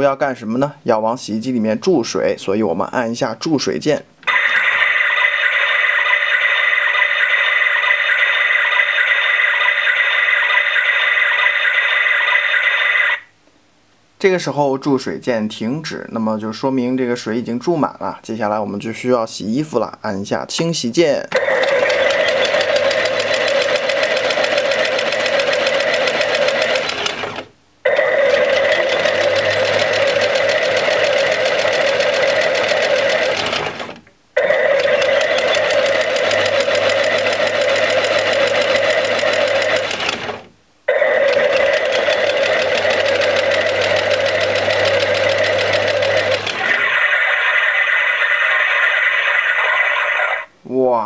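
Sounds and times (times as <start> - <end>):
toy washing machine motor hum: 4.2 - 13.2, 21.4 - 50.5.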